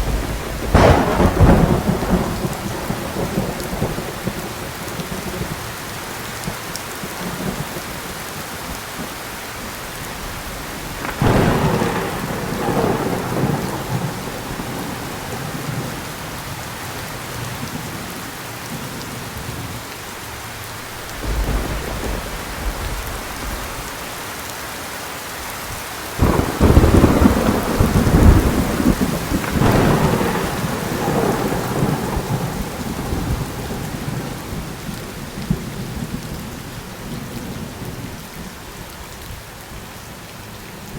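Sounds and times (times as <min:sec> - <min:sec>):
thunder cracking and rumbling: 0:00.0 - 0:05.6, 0:10.2 - 0:18.1, 0:20.9 - 0:24.2, 0:26.2 - 0:38.2
heavy rain: 0:00.0 - 0:40.9.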